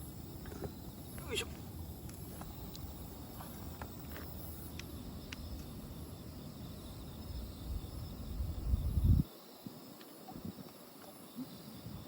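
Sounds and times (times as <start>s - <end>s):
crickets chirping: 0.0s - 12.0s
faint ticks: 2.0s - 5.8s, 9.9s - 11.2s.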